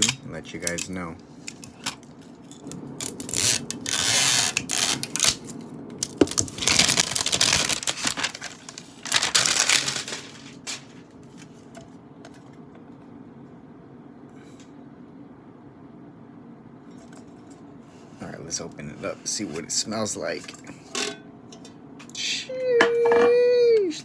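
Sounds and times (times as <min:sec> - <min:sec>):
packaging rustling and crinkling: 0:01.5 - 0:11.6.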